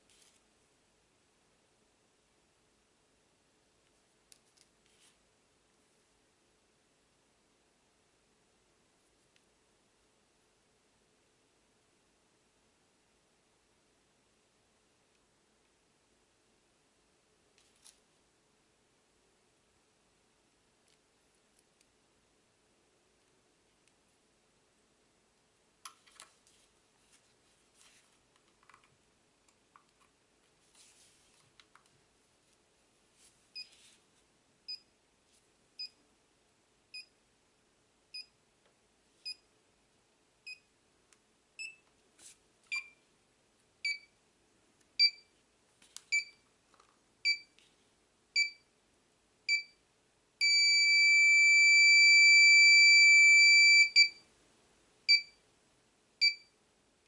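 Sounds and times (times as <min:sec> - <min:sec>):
heart monitor beeps: 0:43.8 - 0:44.1, 0:45.0 - 0:45.3, 0:46.1 - 0:46.4, 0:47.2 - 0:47.6, 0:48.4 - 0:48.7, 0:49.5 - 0:49.8, 0:50.4 - 0:54.2, 0:55.1 - 0:55.4, 0:56.2 - 0:56.5.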